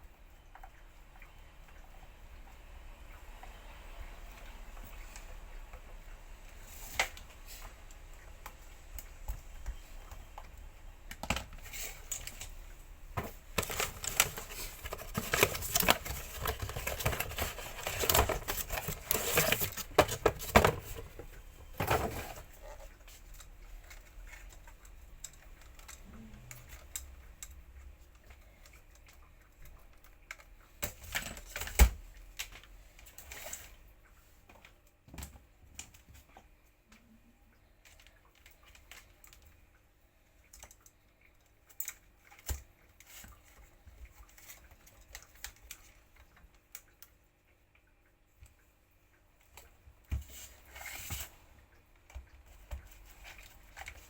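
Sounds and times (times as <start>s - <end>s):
parts clicking and clattering: 13.2s - 22.9s.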